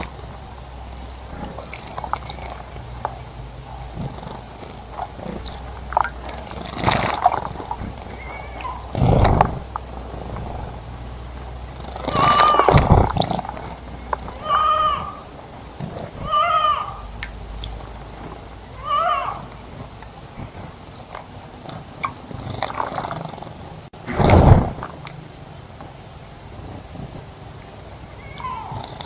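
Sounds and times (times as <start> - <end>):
short mewing bird calls: 0.0 - 19.8, 27.8 - 29.0.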